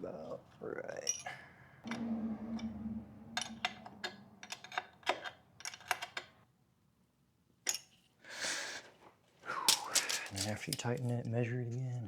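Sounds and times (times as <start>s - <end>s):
steady low hum: 1.8s - 5.2s
hand tools clicking: 9.7s - 11.1s.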